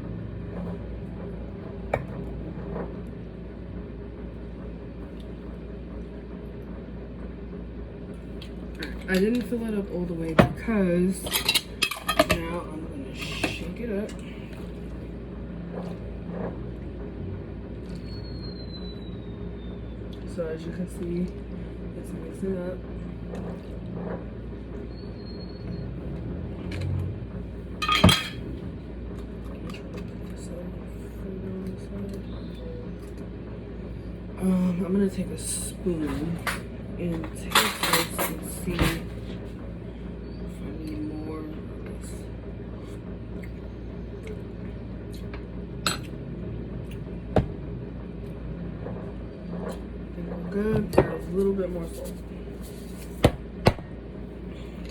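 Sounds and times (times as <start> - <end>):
steady low hum: 0.0 - 54.9
glass jar clinking: 27.8 - 28.4.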